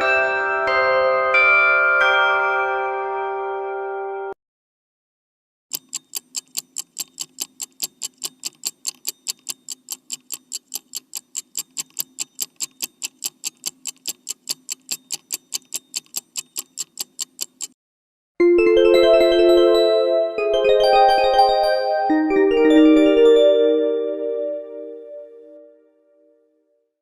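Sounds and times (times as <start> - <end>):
alarm clock ticking fast: 5.7 - 17.8.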